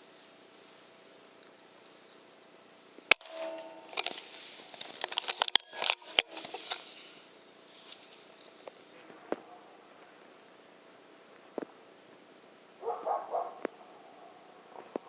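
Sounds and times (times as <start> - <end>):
clicks and scuffling: 3.1 - 10.1.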